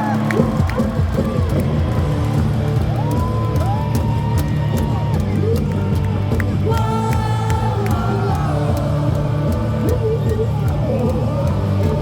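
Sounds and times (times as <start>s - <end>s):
cheer music over loudspeakers: 0.0s - 12.0s
sharp claps: 0.0s - 12.0s
crowd singing along: 6.7s - 12.0s.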